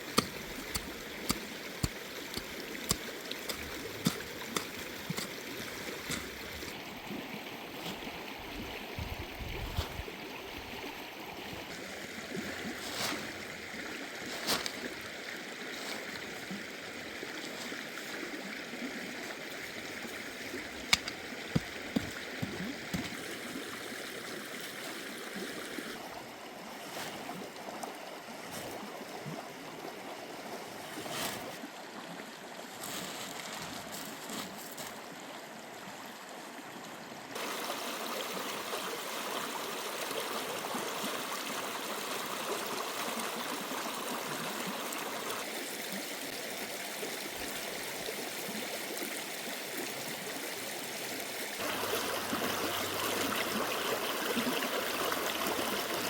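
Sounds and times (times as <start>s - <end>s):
rushing water: 0.0s - 56.0s.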